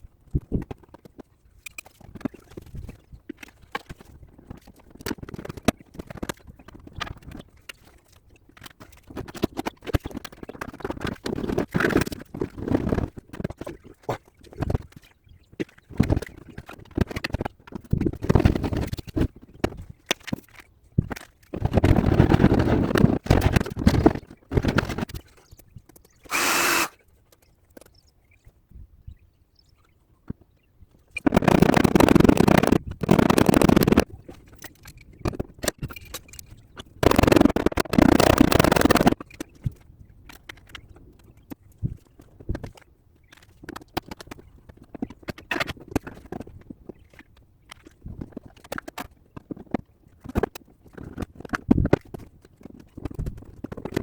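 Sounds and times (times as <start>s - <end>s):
high-pitched tool burst: 26.3s - 27.0s
tool working on steel car panel: 26.3s - 27.0s.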